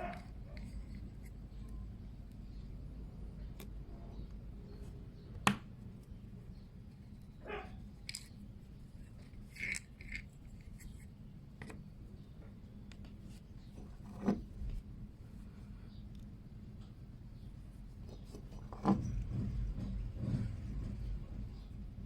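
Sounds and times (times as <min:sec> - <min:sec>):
low steady hum: 0:00.0 - 0:22.0
small plastic parts clicking: 0:08.0 - 0:11.8.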